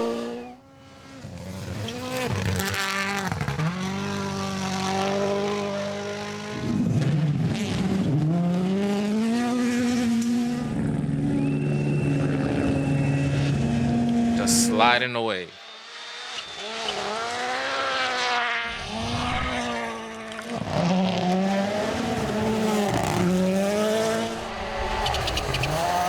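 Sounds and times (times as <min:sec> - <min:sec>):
rally car engine revving: 0:00.0 - 0:26.0
thin high whine: 0:14.4 - 0:21.2.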